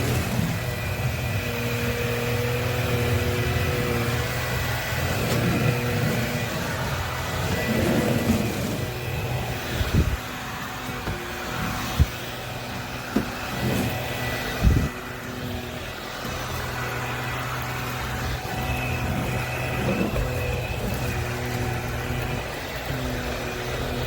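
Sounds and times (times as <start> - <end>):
stick vacuum motor hum: 0.0 - 24.0.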